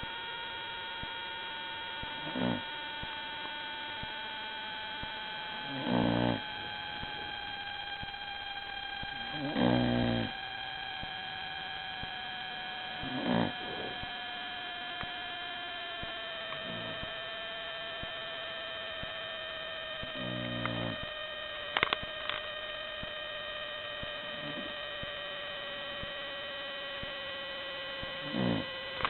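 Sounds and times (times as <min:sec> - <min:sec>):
steady electrical hum: 0:00.0 - 0:29.0
person snoring: 0:02.0 - 0:02.7, 0:05.5 - 0:07.4, 0:09.1 - 0:10.4, 0:12.9 - 0:14.1, 0:16.5 - 0:17.1, 0:20.0 - 0:21.1, 0:24.2 - 0:24.8, 0:28.1 - 0:28.7
high whining tones: 0:04.0 - 0:10.4, 0:16.0 - 0:17.2, 0:19.9 - 0:25.1.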